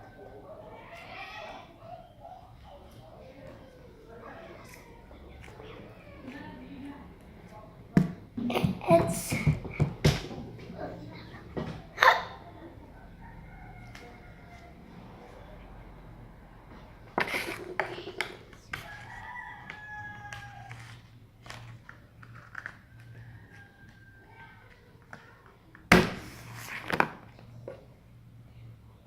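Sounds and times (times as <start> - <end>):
rooster crowing: 13.0 - 15.5, 18.8 - 21.0, 22.9 - 24.6.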